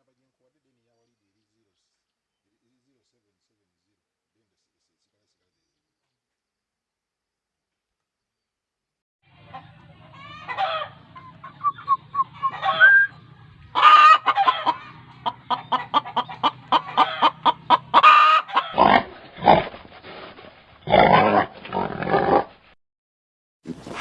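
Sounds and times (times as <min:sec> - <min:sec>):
chickens clucking: 0:09.3 - 0:18.9
harsh farm animal calls: 0:09.3 - 0:22.6.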